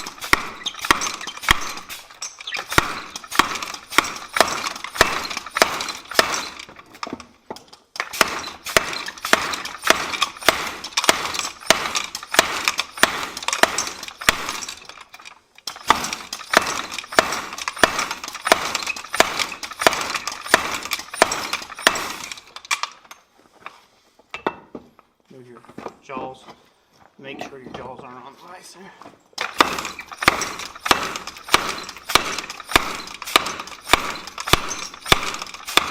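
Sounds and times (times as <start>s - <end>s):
hammer striking hot steel: 0.0s - 6.6s, 8.0s - 14.7s, 15.8s - 22.3s, 29.4s - 35.9s.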